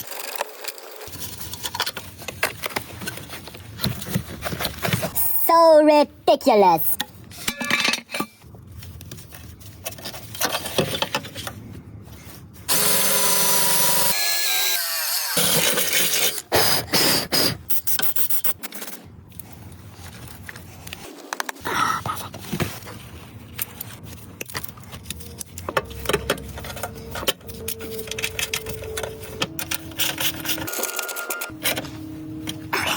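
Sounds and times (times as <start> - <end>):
power drill whining: 12.7 - 15.6
clicking and scraping of hand work: 22.2 - 31.9.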